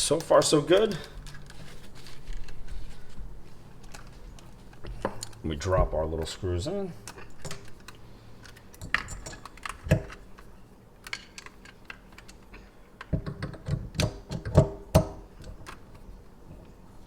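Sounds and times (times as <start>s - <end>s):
small metal parts clinking: 7.1s - 10.2s.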